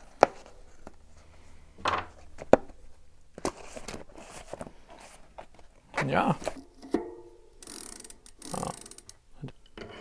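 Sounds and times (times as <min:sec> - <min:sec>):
bicycle parts clacking: 0:06.4 - 0:10.0.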